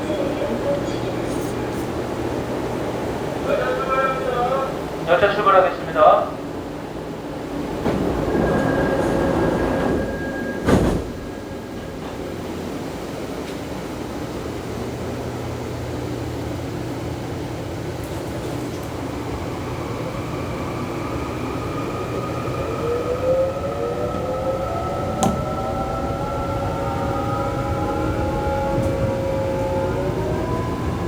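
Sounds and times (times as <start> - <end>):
train rolling and rumbling: 0.0 - 31.0
train whine rising in pitch: 18.9 - 31.0.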